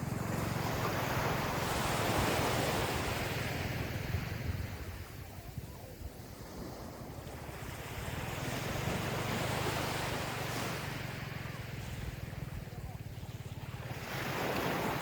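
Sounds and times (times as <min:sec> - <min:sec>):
ocean waves washing onto beach: 0:00.0 - 0:15.0.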